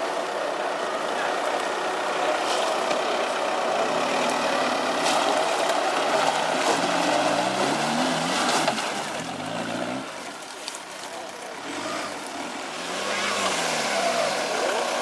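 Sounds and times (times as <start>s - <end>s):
engine under load: 0.0s - 10.4s.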